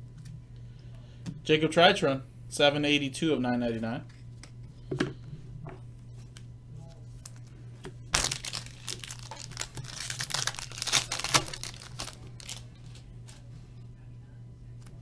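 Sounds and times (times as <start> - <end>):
low steady hum: 0.0 - 15.0
foil wrapper tearing and crinkling: 8.1 - 13.0.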